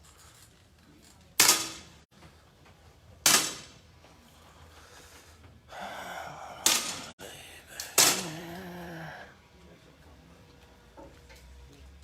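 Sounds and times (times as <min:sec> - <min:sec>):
air pistol shots: 0:01.4 - 0:01.9, 0:03.2 - 0:03.8, 0:07.9 - 0:08.2.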